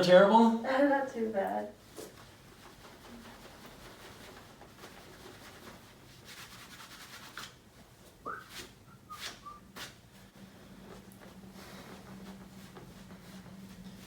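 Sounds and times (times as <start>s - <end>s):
clothing rustling on padded table: 7.4s - 14.0s.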